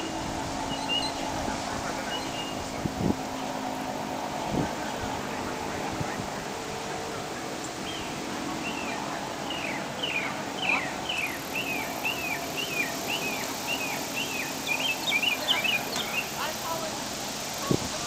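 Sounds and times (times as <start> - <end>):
songbird whistling: 0.7 - 1.2, 8.7 - 16.4.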